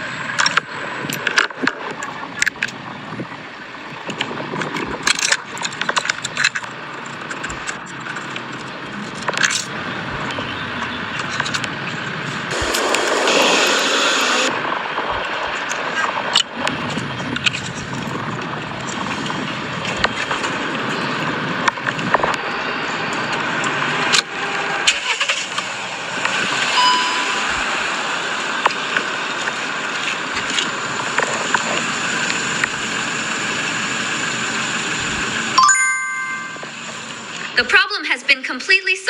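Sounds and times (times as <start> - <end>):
car engine running: 16.3 - 35.6.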